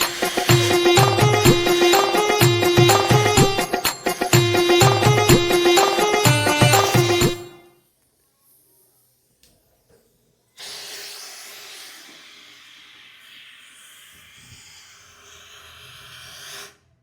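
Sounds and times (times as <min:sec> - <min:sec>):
air hissing through pipe: 0:00.0 - 0:03.2, 0:10.6 - 0:17.0.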